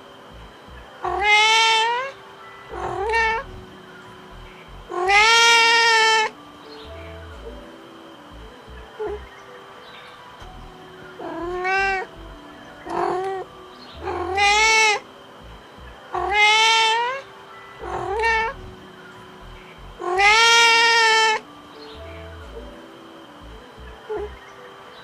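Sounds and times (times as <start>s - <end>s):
cat meowing: 1.0s - 2.1s, 2.7s - 3.5s, 4.9s - 6.3s, 11.2s - 12.1s, 14.0s - 15.0s, 16.1s - 17.2s, 17.8s - 18.6s, 20.0s - 21.4s.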